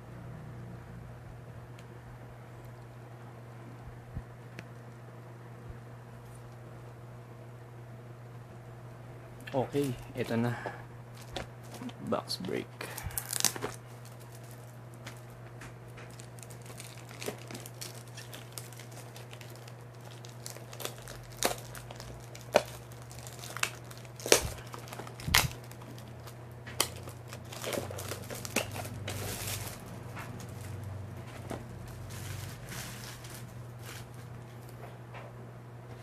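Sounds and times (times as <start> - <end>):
plastic wrapping crinkling and tearing: 9.4 - 34.8.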